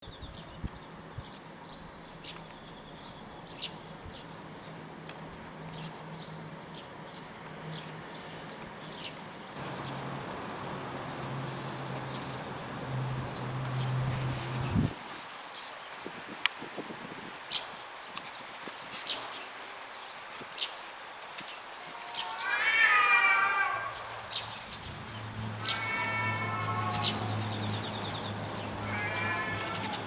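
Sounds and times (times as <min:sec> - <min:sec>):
cats growling: 0:21.8 - 0:30.0.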